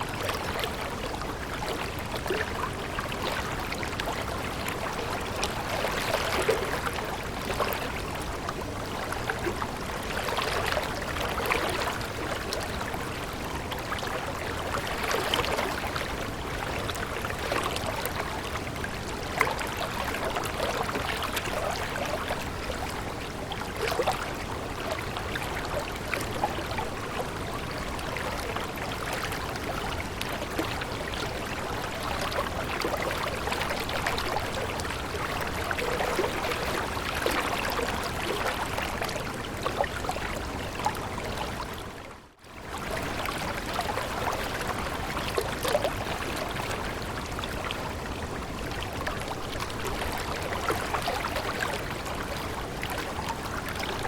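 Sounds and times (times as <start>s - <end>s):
stream of water flowing: 0.0s - 54.0s.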